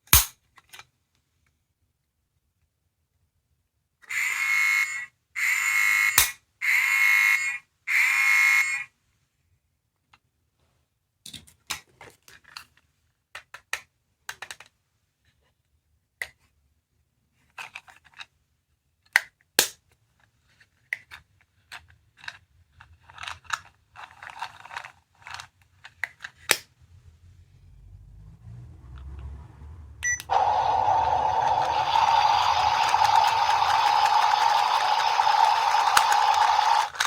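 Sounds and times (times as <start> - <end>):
plastic capsule toys clicking: 30.3 - 37.0.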